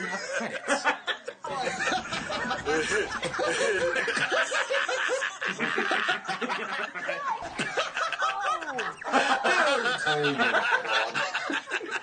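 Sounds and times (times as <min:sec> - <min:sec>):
men laughing: 0:00.0 - 0:12.0.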